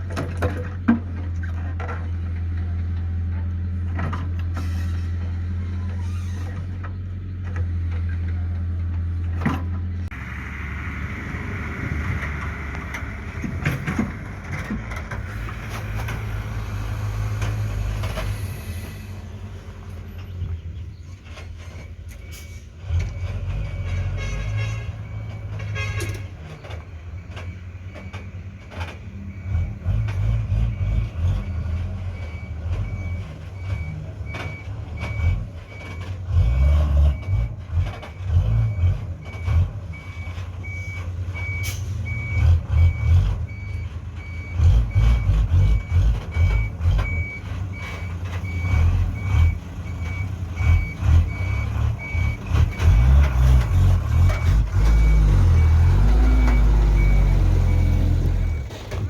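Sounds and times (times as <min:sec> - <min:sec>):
diesel machinery engine revving: 0:02.0 - 0:59.0
reversing alarm beeping: 0:38.1 - 0:53.1, 0:54.2 - 0:58.7.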